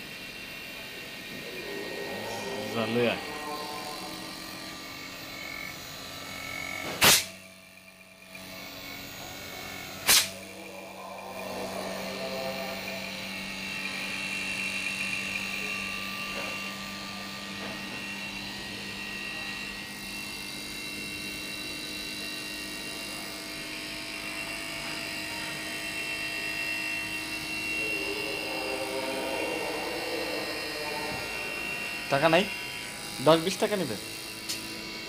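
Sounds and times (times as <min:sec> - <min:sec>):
faint high whine: 0:00.0 - 0:35.0
low motor hum: 0:00.0 - 0:35.0.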